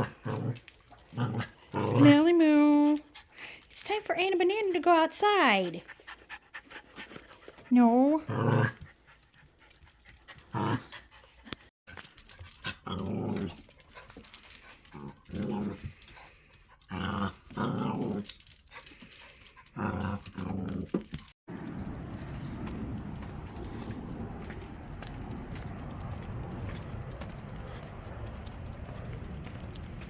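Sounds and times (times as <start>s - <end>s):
dog growling: 0.0s - 2.9s, 8.2s - 9.0s, 10.4s - 11.2s, 12.6s - 13.8s, 14.8s - 18.4s, 19.1s - 21.3s.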